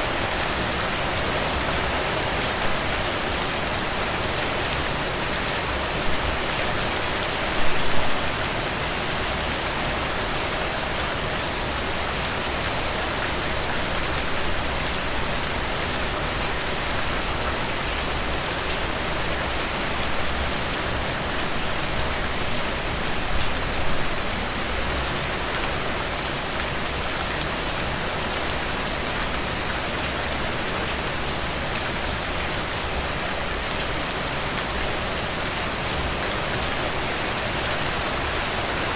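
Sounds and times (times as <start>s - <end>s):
rain falling on leaves: 0.0s - 38.9s.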